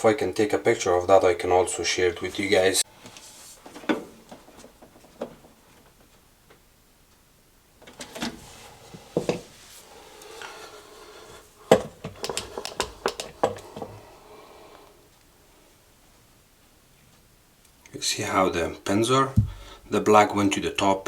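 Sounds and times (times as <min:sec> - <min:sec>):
knocks: 0:19.4 - 0:19.9.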